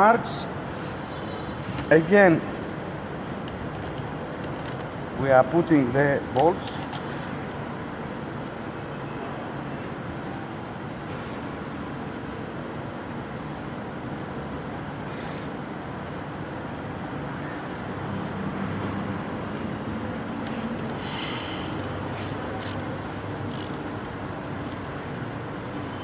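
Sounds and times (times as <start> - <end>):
workshop background noise: 0.0 - 12.5, 13.9 - 26.0.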